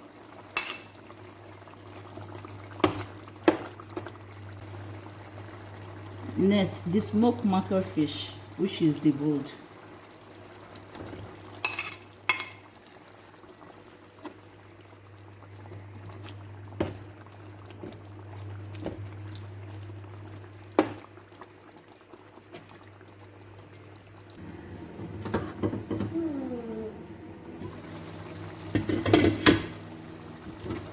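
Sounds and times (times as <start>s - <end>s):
metal utensil clinking on pot: 0.6s - 0.9s, 11.6s - 12.6s.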